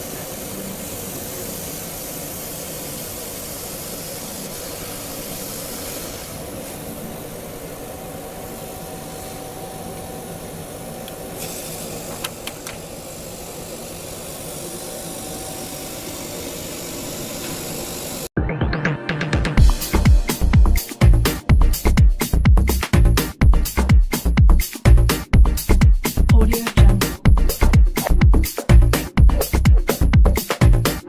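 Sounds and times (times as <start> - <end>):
machine running: 19.0 - 31.0.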